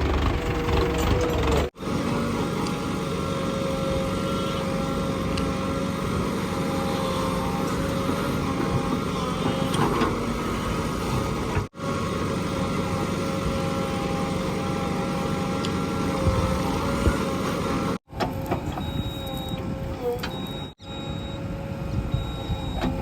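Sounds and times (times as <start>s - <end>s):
diesel engine running: 0.0s - 23.0s.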